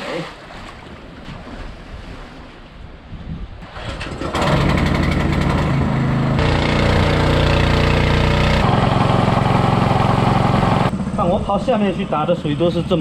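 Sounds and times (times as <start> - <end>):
small engine water pump running: 3.7 - 11.2.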